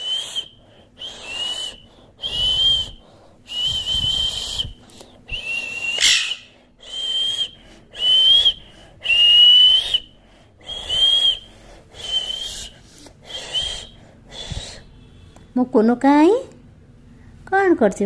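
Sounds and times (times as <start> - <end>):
parrot whistle-like calls: 5.4 - 10.1.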